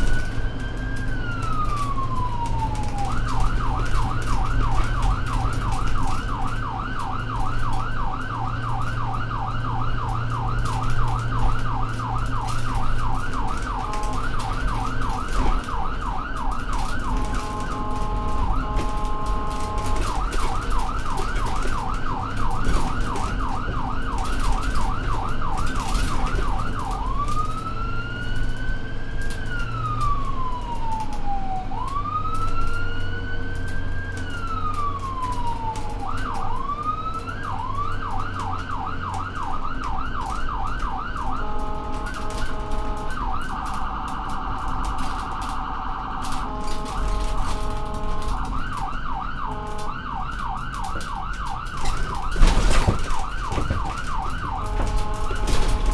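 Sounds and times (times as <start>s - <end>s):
ambulance siren: 0.0s - 55.9s
road noise: 0.0s - 55.9s
vehicle engine hum: 0.0s - 55.9s.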